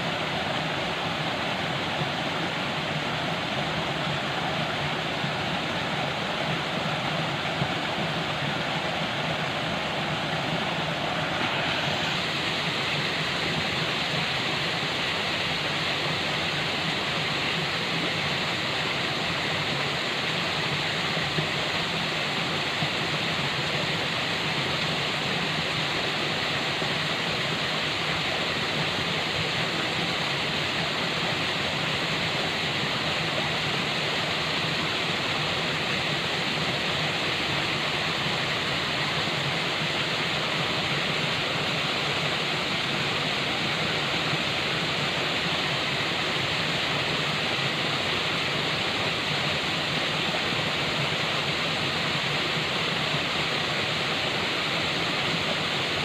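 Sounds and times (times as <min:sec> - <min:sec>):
falling water rushing: 0:00.0 - 0:56.0.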